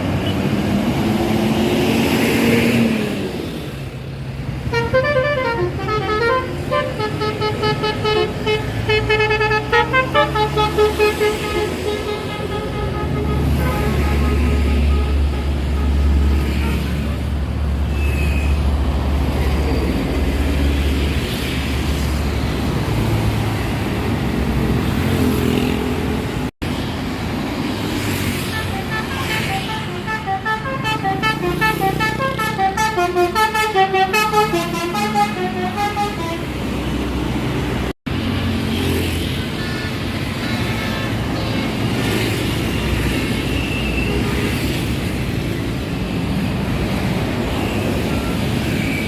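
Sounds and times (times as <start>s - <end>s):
melodic air horn tune: 4.7s - 16.8s, 28.5s - 36.5s.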